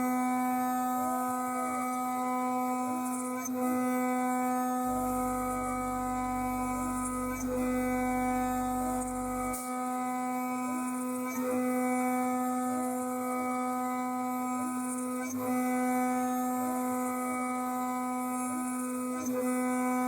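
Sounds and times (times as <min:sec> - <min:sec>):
low hum: 0:04.9 - 0:09.6.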